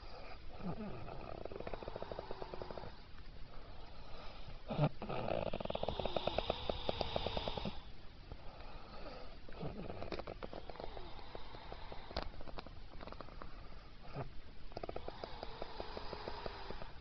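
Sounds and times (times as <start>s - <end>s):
man snoring: 4.7s - 7.8s, 14.1s - 16.9s.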